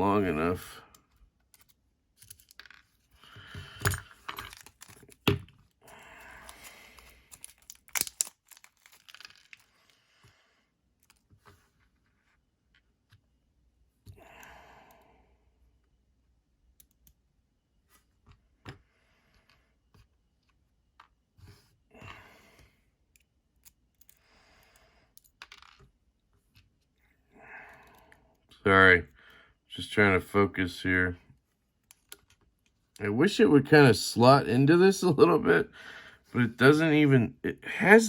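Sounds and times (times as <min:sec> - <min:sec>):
small metal parts clicking: 0:01.4 - 0:02.9, 0:03.8 - 0:05.3, 0:06.4 - 0:09.7.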